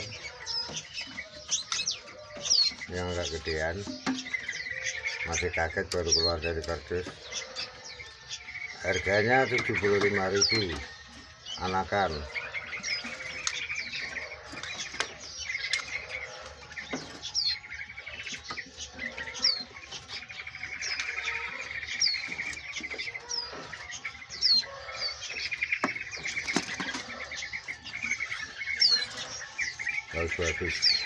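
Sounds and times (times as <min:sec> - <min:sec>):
caged songbirds chirping: 0:00.0 - 0:31.0
knocks on cages: 0:03.8 - 0:04.7.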